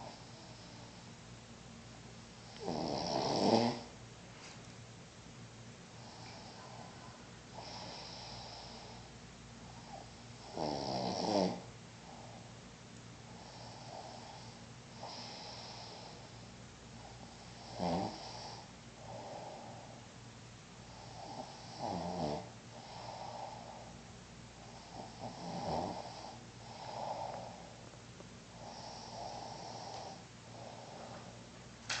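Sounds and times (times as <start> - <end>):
person snoring: 2.5 - 3.9, 9.9 - 11.7, 17.5 - 19.8, 21.0 - 24.0, 24.7 - 27.8, 28.5 - 31.4.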